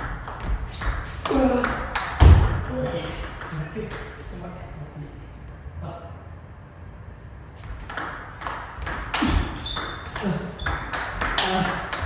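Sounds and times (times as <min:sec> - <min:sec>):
table tennis ball pinging: 0:00.0 - 0:04.2, 0:07.6 - 0:12.0.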